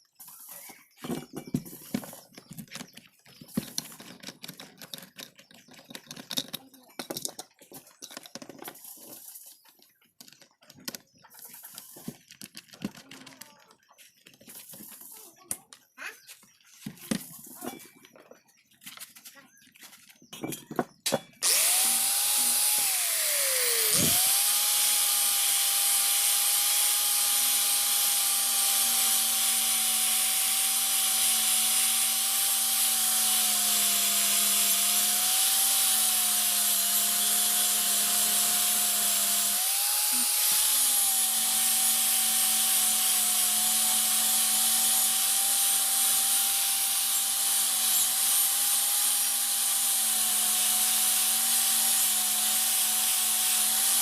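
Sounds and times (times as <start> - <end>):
power tool grinding metal: 21.4 - 54.0.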